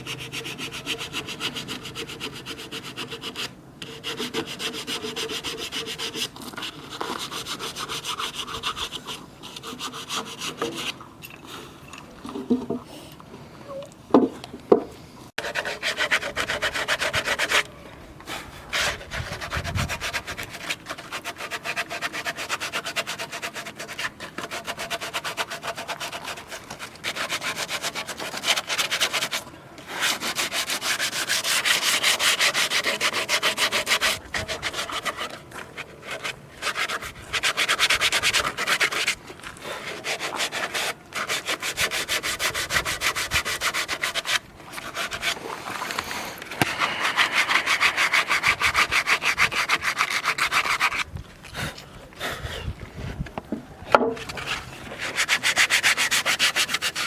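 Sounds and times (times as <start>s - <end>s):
wood being sanded by hand: 0.0s - 11.0s, 15.4s - 17.7s, 18.6s - 45.6s, 46.6s - 51.1s, 54.4s - 57.0s.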